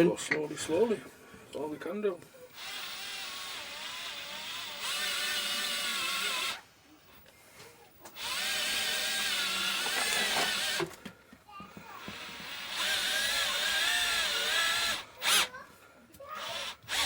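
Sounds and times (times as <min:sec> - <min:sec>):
power drill running slowly: 0:02.5 - 0:07.2, 0:08.0 - 0:11.0, 0:11.7 - 0:15.6, 0:16.3 - 0:17.0.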